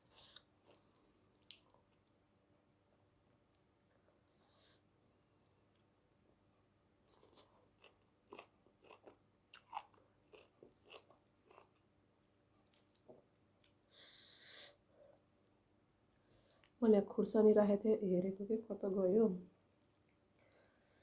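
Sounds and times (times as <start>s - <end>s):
close-up chewing: 7.1s - 14.0s.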